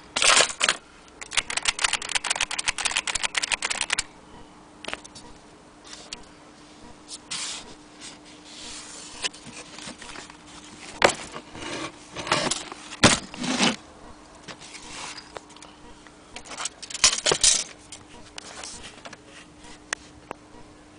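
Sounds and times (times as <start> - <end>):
faint steady hum: 0.0 - 20.9
typewriter metallic clicks and rattles: 0.2 - 4.1.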